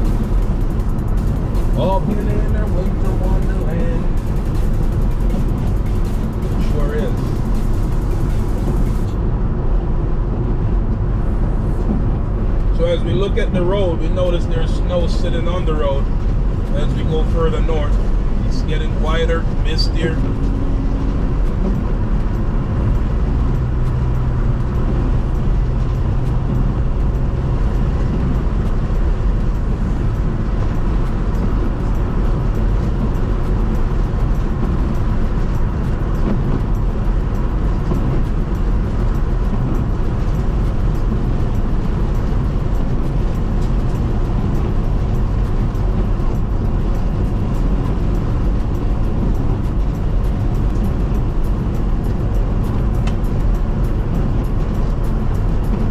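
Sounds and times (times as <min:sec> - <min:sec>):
snow and ice ticking on car: 0:00.0 - 0:09.1
car road and engine noise: 0:00.0 - 0:55.9.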